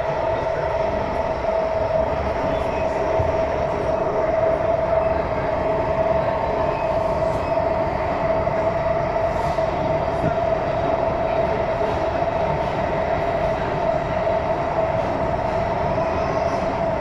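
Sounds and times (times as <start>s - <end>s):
train wheels rumbling on track: 0.0s - 17.0s.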